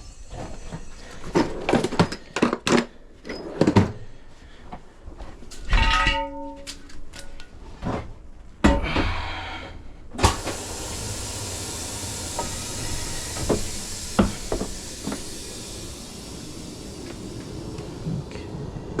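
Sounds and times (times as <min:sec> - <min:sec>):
compressed air hissing: 0:10.2 - 0:19.0.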